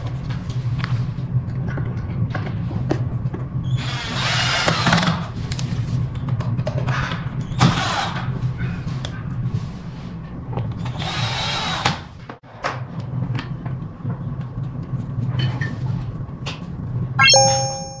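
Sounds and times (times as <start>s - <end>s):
held electronic tone: 17.2s - 18.0s
rising electronic beeps: 17.2s - 18.0s.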